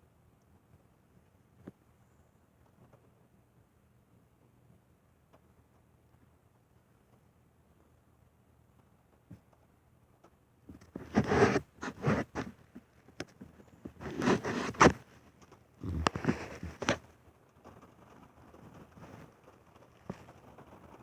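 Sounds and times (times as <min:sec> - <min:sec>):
raspy snoring: 0:15.8 - 0:16.6.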